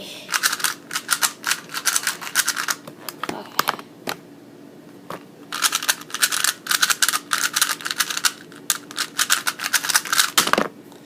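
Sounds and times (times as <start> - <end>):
puzzle cube plastic clicks: 0.3 - 3.8, 5.5 - 10.6.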